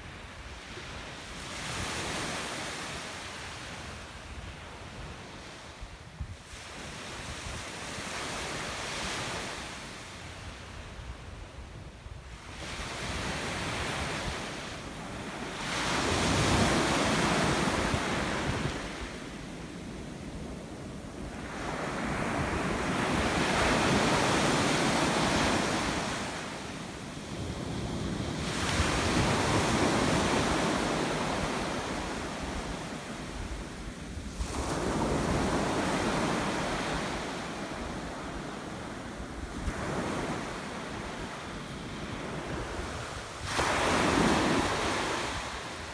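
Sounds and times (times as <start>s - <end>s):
sea waves washing onto shore: 20.6s - 45.9s.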